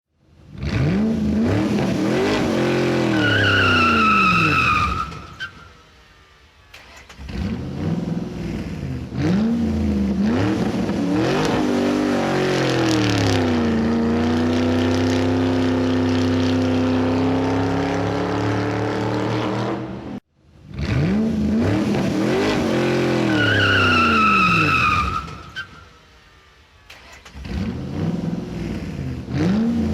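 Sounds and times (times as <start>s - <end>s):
car engine revving: 0.3s - 5.4s, 6.7s - 25.6s, 26.9s - 29.9s
tyre squeal: 2.8s - 5.8s, 23.1s - 25.9s.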